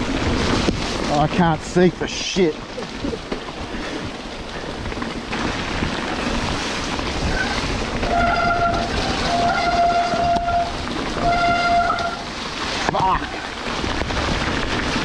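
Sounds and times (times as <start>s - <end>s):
rain: 0.0s - 15.0s
tyres on wet trail: 0.0s - 15.0s
wind: 0.0s - 15.0s
bike disc brakes squealing: 7.2s - 12.3s.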